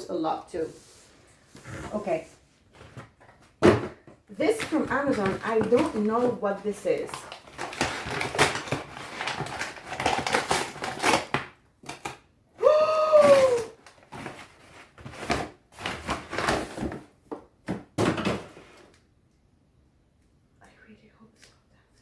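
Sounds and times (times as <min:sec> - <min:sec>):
packaging rustling and ripping: 0:04.4 - 0:12.2, 0:13.1 - 0:17.1.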